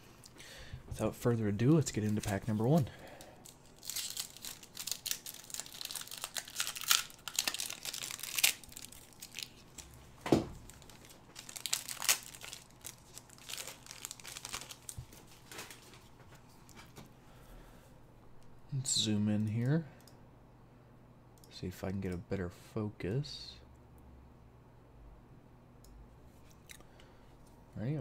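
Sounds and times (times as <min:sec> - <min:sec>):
foil wrapper crinkling and tearing: 0:02.0 - 0:10.0, 0:10.6 - 0:16.1.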